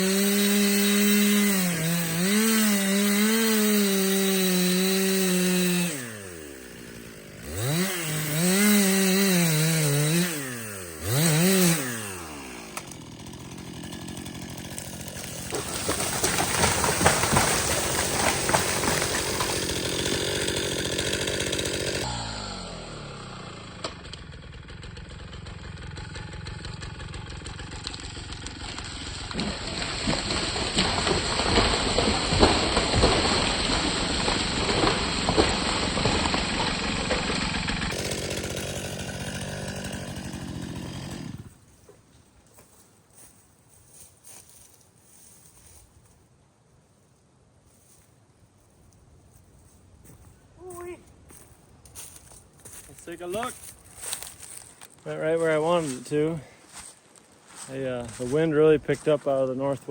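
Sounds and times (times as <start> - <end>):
chainsaw revving and idling: 0.0 - 41.8, 52.0 - 59.9
tree crashing through branches: 11.0 - 22.0, 26.9 - 41.5, 51.3 - 58.3.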